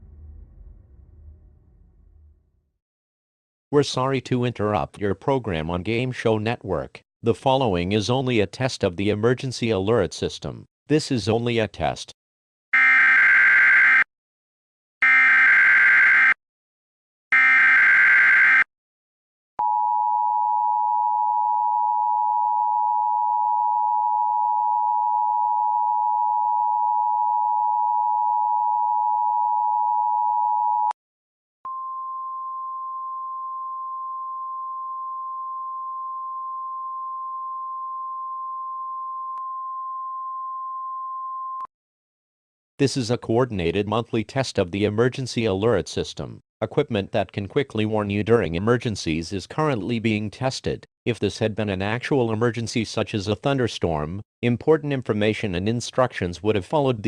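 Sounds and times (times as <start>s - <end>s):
steady tone: 0.0s - 2.6s.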